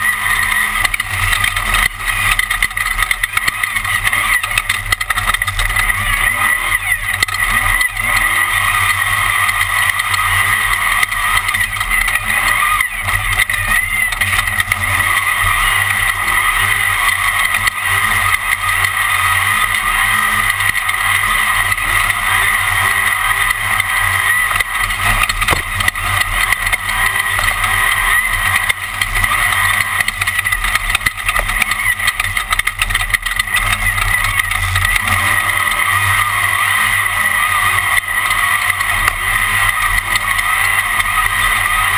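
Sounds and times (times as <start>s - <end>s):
race car engine and terrain noise: 0.0s - 41.9s
scattered knocks: 23.6s - 27.7s.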